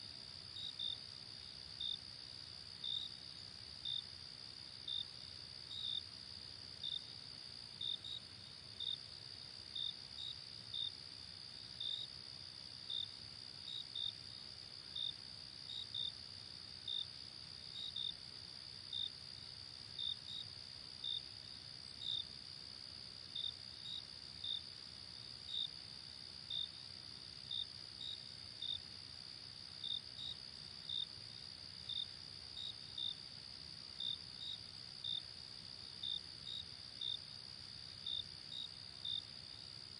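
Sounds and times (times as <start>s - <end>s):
insects chirping: 20.0s - 39.9s.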